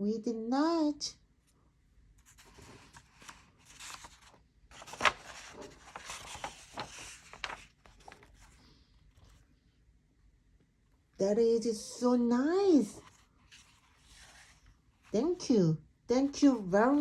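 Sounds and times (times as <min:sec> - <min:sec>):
paper pages turning: 0:02.2 - 0:09.4, 0:12.8 - 0:15.4, 0:16.2 - 0:17.0.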